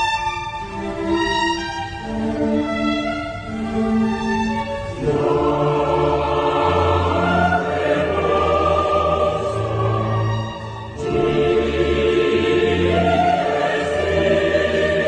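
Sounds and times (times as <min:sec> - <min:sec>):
sustained string notes: 0:00.0 - 0:15.0
choir singing: 0:04.4 - 0:15.0.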